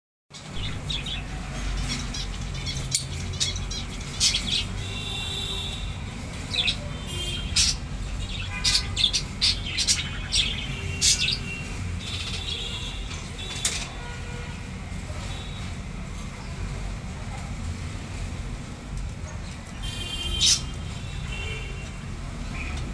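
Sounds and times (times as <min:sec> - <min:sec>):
lovebirds chirping: 0:00.4 - 0:13.0.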